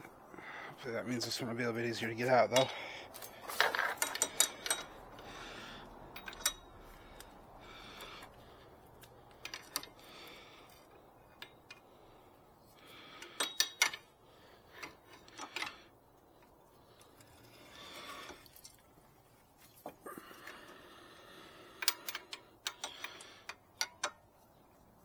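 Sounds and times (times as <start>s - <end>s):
hand tools clinking on metal: 1.3s - 11.9s, 13.1s - 14.1s, 21.6s - 24.8s.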